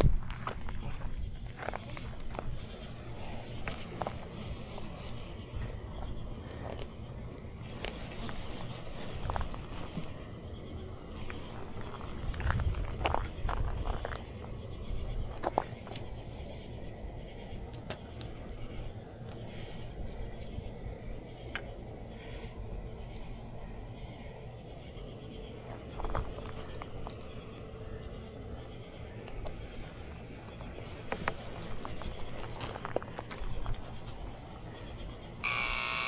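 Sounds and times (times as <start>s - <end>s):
insects chirring: 0.0s - 36.0s.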